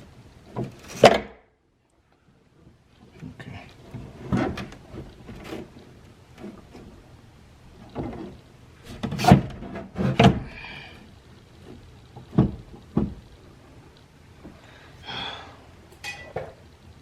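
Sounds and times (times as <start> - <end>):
metal knocks and clunks: 12.2 - 13.2.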